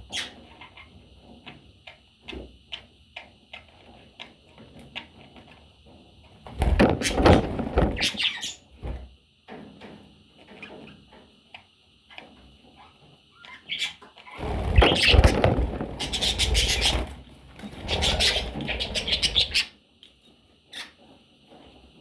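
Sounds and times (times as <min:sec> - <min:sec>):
parrots chirping and squawking: 0:13.4 - 0:19.7
loud noisy clatter: 0:14.4 - 0:19.4.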